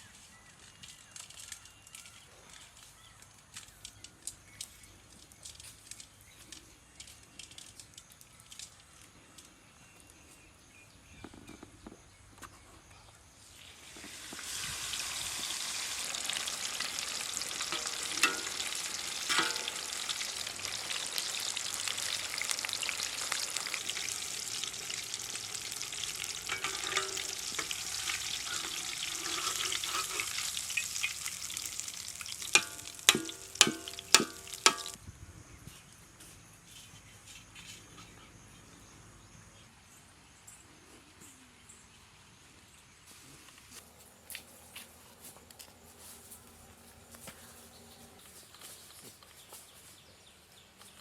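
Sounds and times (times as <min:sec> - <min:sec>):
chicken sizzling in hot oil: 0:13.5 - 0:35.0
metal knocks on pan: 0:19.3 - 0:19.8, 0:32.5 - 0:35.0.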